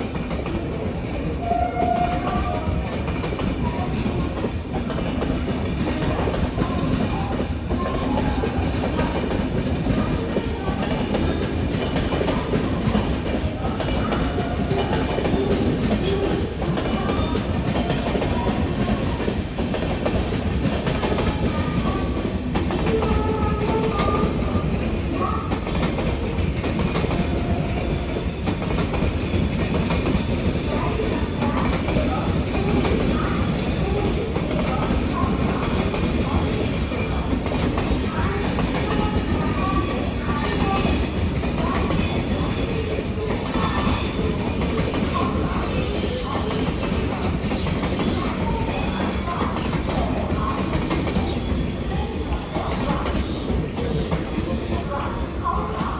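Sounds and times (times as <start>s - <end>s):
train wheels clattering over rail joints: 0.0s - 55.9s
train wheel squeals: 1.4s - 4.0s, 13.9s - 19.3s, 22.8s - 55.9s.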